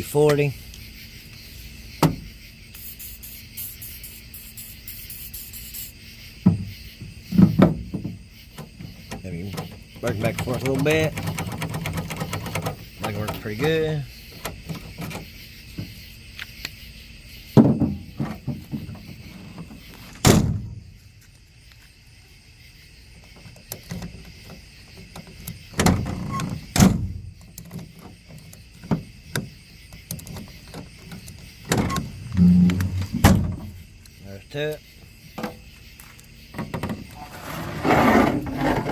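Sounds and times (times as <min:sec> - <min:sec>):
tailgate latch clunks: 0:20.2 - 0:20.7, 0:31.7 - 0:33.7.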